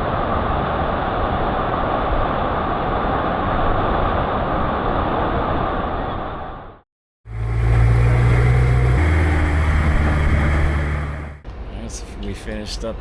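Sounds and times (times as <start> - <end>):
wind and water rushing: 0.0 - 6.3.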